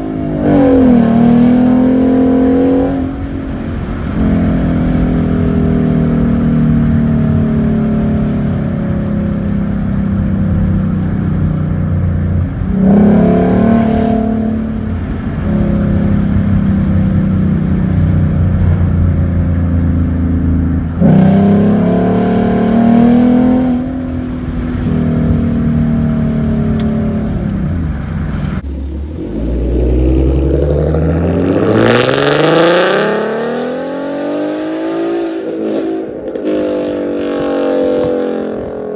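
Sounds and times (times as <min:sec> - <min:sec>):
car engine revving: 0:00.0 - 0:38.9.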